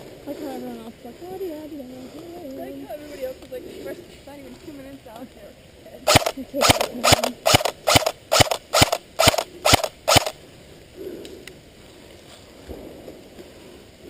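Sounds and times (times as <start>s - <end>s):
airsoft rifle shots: 6.1s - 10.4s.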